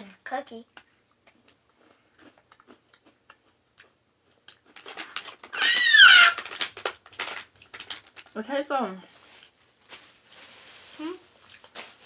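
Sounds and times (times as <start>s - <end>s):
cookie crunching and chewing: 0.7s - 8.4s, 11.3s - 12.0s.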